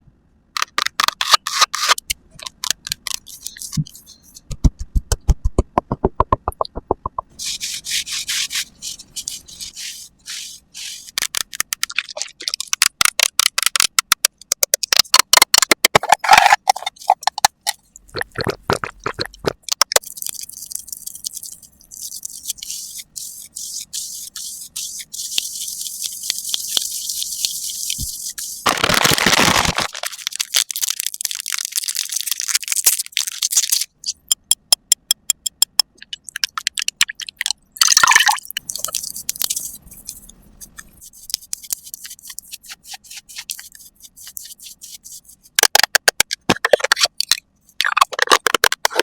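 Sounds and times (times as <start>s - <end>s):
crisp tapping and clicking: 0.6s - 7.3s, 11.1s - 37.6s, 45.4s - 49.0s
brushing scratching hiss: 3.0s - 4.6s, 7.3s - 11.7s, 16.0s - 28.7s, 38.7s - 45.6s.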